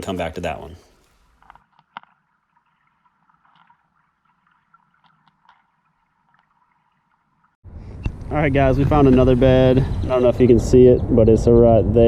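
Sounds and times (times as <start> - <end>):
small underwater clicks: 1.2 - 7.6.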